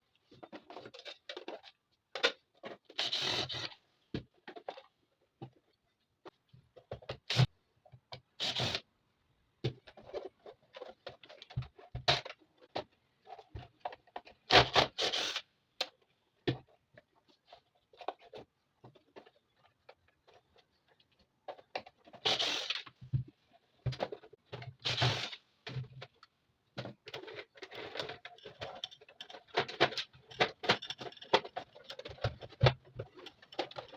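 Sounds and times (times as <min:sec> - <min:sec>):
hands handling sewing machine parts: 0:15.8 - 0:33.9.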